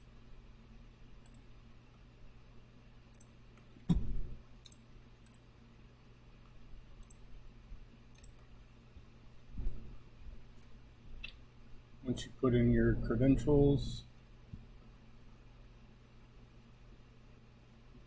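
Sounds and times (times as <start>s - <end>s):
faint steady hum: 0.0s - 18.0s
low thump: 3.9s - 4.3s
mouse and keyboard clicks: 8.1s - 8.4s.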